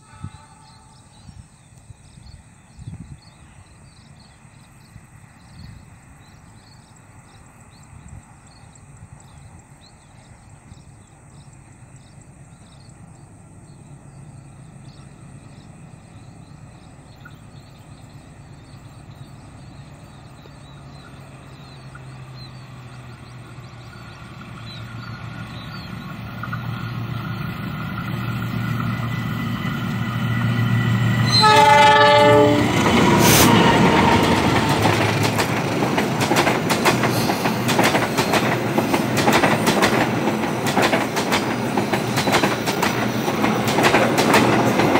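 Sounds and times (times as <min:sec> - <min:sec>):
train horn: 0:00.0 - 0:01.4, 0:30.4 - 0:35.2
train rumble: 0:00.0 - 0:44.9
wheels clacking over rail joints: 0:20.4 - 0:44.9.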